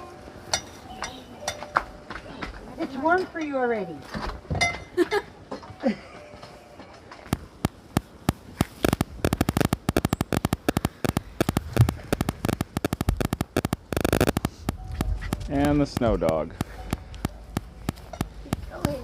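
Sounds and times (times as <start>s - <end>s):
snow crunching: 7.3s - 19.0s.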